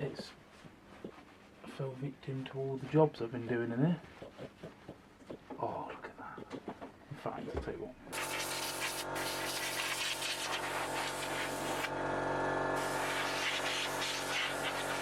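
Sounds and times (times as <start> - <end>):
hissing scrub on metal part: 8.2 - 11.9, 12.8 - 15.0
power tool motor running: 8.2 - 15.0.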